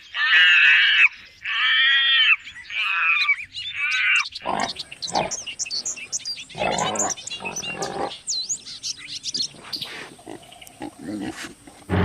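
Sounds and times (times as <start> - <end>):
high bird chirps: 1.1 - 10.8
low rough animal calls: 4.4 - 8.3.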